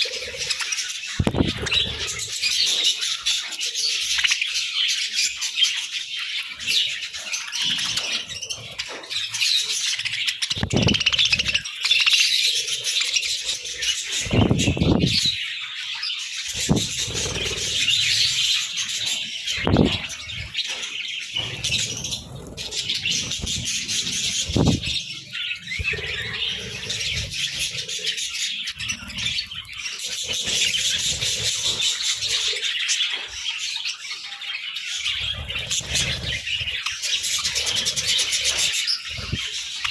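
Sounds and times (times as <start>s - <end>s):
wing flutters: 0.0s - 3.0s, 7.6s - 15.4s, 16.5s - 32.7s, 35.1s - 39.9s
budgerigars chattering and chirping: 0.0s - 39.9s.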